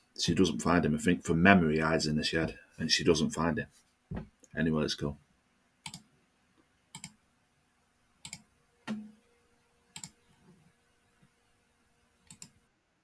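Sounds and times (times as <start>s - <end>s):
dull knock: 4.1s - 4.3s
computer mouse clicks: 5.8s - 6.1s, 6.9s - 7.2s, 8.2s - 9.0s, 10.0s - 10.2s, 12.3s - 12.6s.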